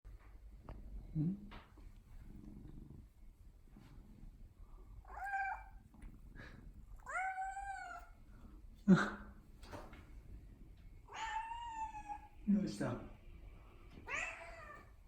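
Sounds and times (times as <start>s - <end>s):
cat meowing: 5.1s - 5.8s, 7.0s - 8.1s, 11.1s - 12.3s, 14.0s - 15.0s.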